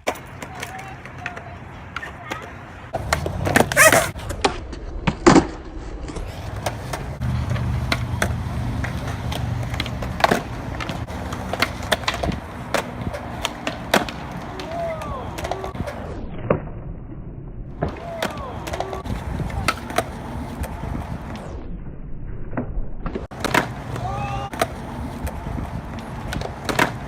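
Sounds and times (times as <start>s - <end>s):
skateboards clacking: 0.0s - 4.6s, 6.2s - 16.1s, 17.9s - 21.4s, 23.2s - 27.0s
skateboard wheels rolling: 0.0s - 16.5s, 17.8s - 21.7s, 23.1s - 27.0s.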